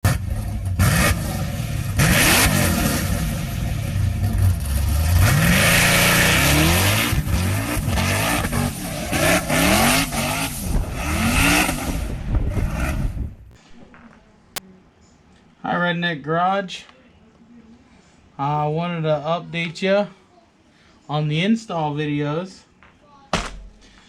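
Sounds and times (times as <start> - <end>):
vehicle engine revving hard: 0.0 - 13.4.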